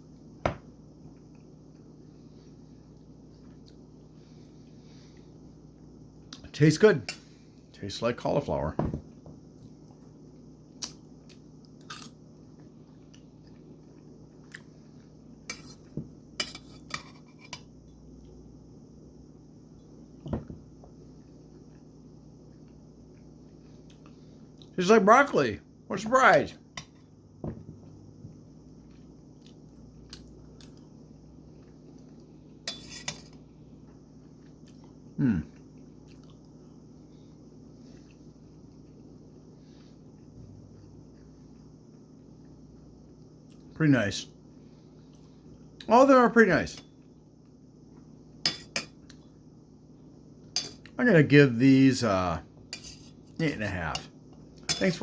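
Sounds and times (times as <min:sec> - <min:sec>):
person chewing vegetables: 0:02.9 - 0:05.2, 0:33.8 - 0:36.8
cutlery clinking against a dish: 0:16.4 - 0:17.7, 0:32.7 - 0:33.4, 0:48.5 - 0:49.0, 0:50.6 - 0:50.9, 0:52.8 - 0:54.1, 0:54.7 - 0:55.0.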